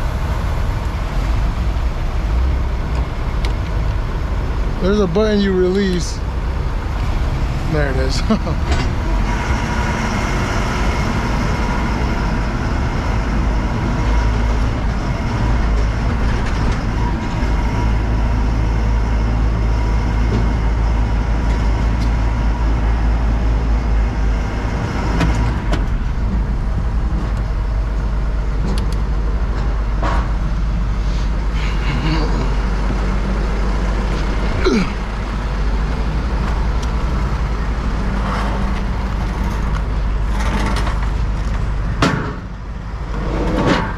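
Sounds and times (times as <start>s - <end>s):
diesel engine rumbling: 0.0s - 43.9s.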